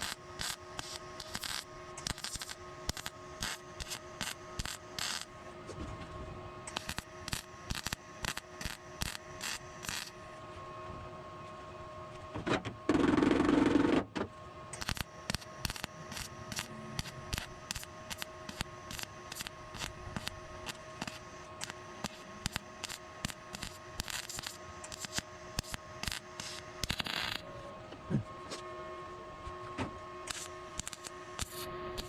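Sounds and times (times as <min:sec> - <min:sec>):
loud burst of noise: 0:14.8 - 0:27.4.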